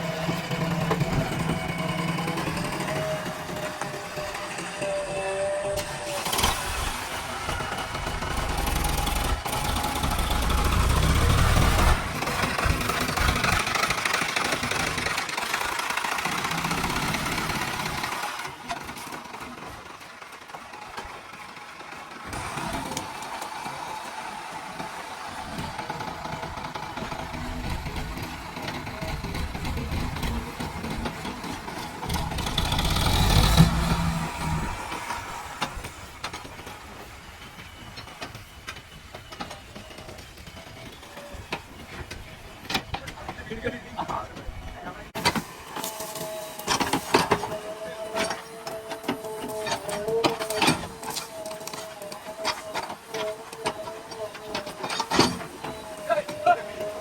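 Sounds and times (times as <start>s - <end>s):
heavy diesel engine revving: 0.0s - 18.6s, 22.2s - 36.2s.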